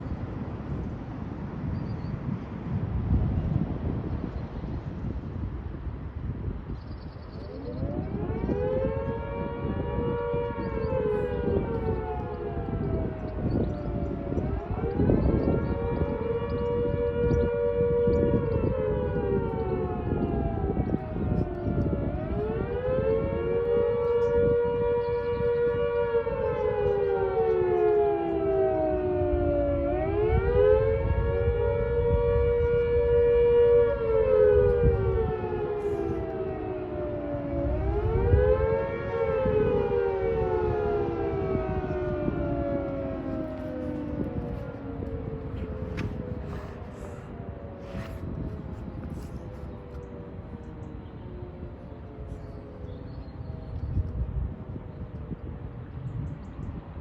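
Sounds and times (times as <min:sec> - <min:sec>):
dual-tone warning siren wailing: 0:00.0 - 0:57.0.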